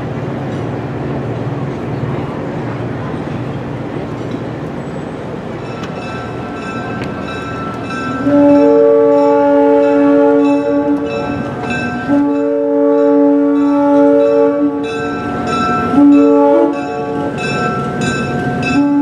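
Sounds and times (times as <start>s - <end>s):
moving train rumble: 0.0s - 19.0s
locomotive air horn: 8.2s - 11.3s, 12.0s - 14.9s, 15.8s - 17.4s, 18.6s - 19.0s.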